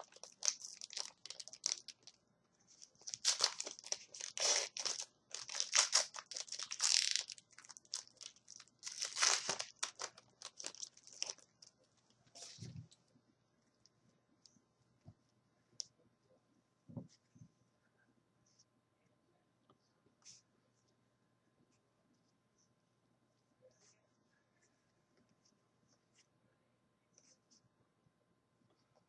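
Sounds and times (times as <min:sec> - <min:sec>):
foil wrapper crinkling and tearing: 0:00.0 - 0:02.2, 0:02.9 - 0:11.7.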